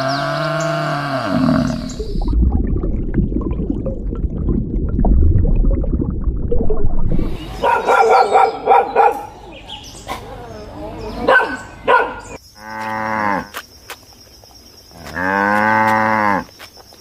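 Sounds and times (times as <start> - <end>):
large animal deep roar: 0.0 - 2.3
crackling rumbling noise: 1.4 - 7.6
dog barking: 7.6 - 9.4, 11.2 - 12.4.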